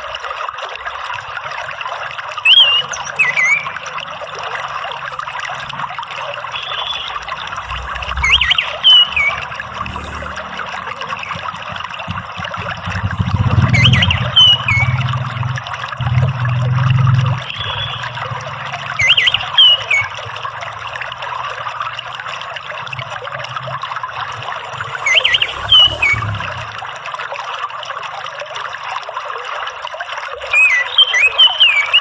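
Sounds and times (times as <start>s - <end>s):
water trickling: 0.0s - 32.0s
bird whistled call: 2.5s - 3.9s, 6.5s - 7.3s, 8.2s - 10.4s, 13.7s - 15.1s, 17.4s - 18.2s, 19.0s - 20.2s, 24.8s - 26.7s, 30.5s - 32.0s
low rumble: 7.0s - 18.7s, 22.9s - 27.0s.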